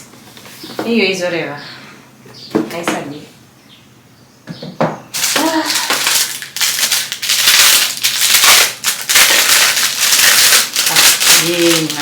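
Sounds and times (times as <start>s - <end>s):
packaging crinkling and tearing: 5.1s - 12.0s.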